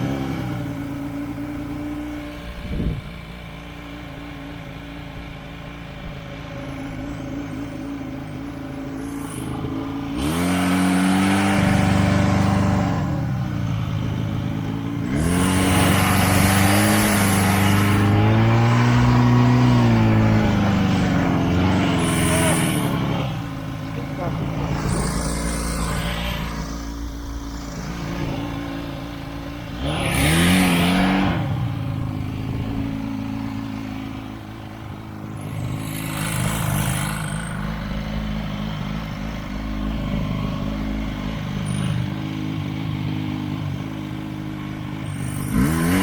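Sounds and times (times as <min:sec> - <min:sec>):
snowmobile engine revving: 0:08.3 - 0:42.3, 0:45.0 - 0:46.0.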